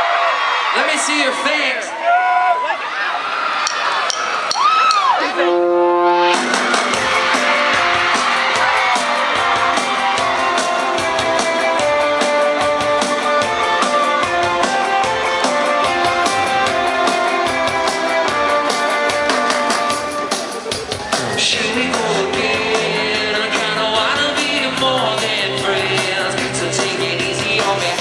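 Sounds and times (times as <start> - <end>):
electric guitar: 5.1 - 28.0
drum kit steady beat: 6.3 - 28.0.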